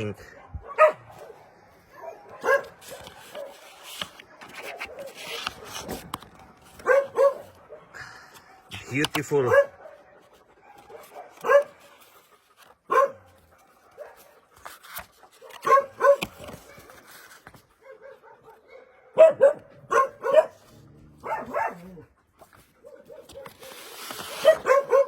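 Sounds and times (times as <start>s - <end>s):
dog barking: 0.2s - 3.7s, 6.8s - 8.8s, 9.4s - 11.8s, 12.9s - 14.4s, 15.4s - 17.0s, 17.8s - 22.1s, 22.8s - 25.0s.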